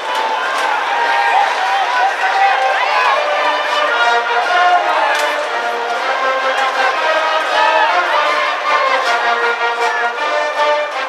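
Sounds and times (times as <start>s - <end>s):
brass band playing: 0.0s - 11.0s
crowd voices: 0.0s - 11.0s.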